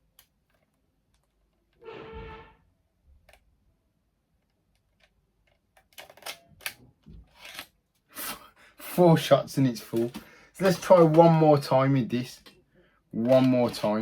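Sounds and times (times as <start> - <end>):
camera clicks and clatter: 4.9 - 7.8.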